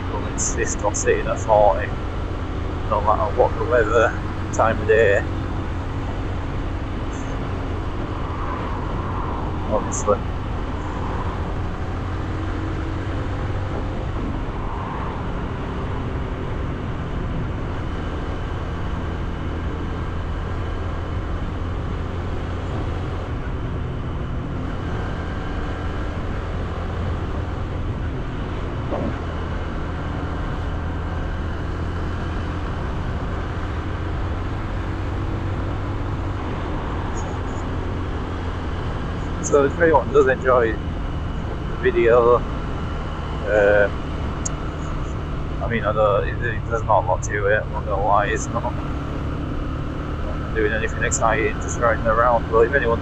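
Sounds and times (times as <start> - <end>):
wind and road noise: 0.0 - 53.0
motorcycle engine running: 15.2 - 53.0.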